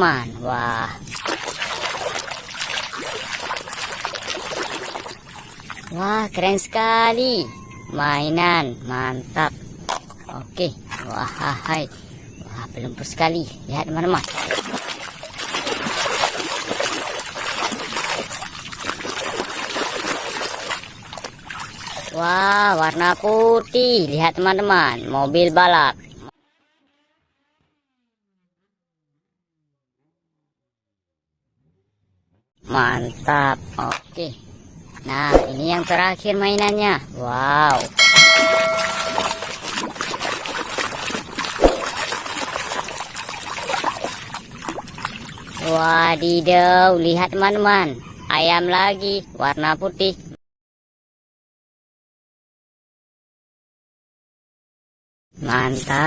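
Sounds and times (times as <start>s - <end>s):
water splashing and trickling: 0.7s - 6.7s, 14.0s - 23.8s, 37.4s - 46.2s.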